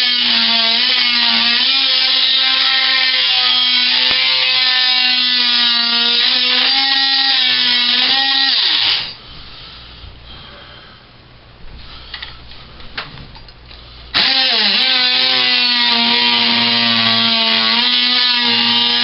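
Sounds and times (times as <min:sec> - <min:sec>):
oscillating multi-tool buzzing: 0:00.0 - 0:09.2, 0:14.1 - 0:19.0.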